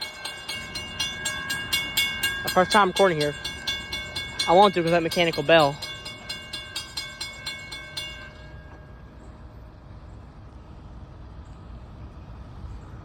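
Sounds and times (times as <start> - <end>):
crossing bell ringing: 0.0 - 10.2.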